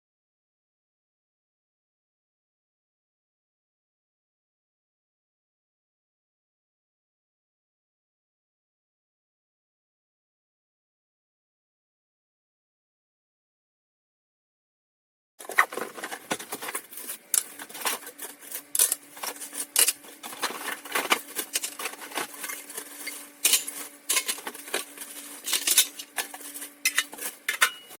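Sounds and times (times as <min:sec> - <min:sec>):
metal pans clattering: 0:15.4 - 0:28.0.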